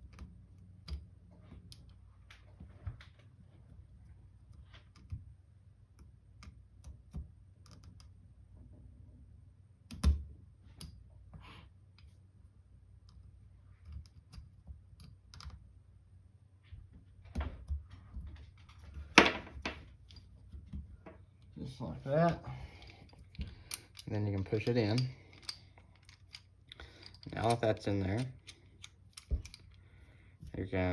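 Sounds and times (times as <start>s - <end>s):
pistol parts clicking: 22.2s - 30.0s.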